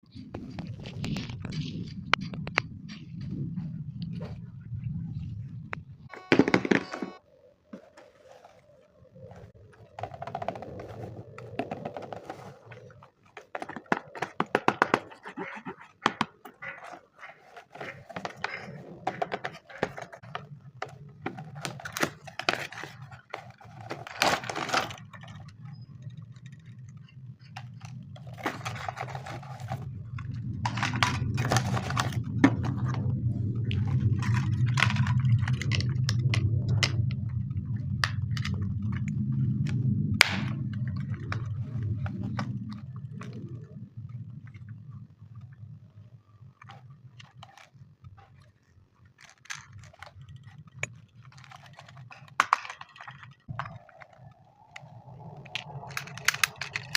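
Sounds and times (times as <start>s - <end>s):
plastic and cardboard packaging tearing: 21.0s - 25.5s
clicks: 46.6s - 56.9s.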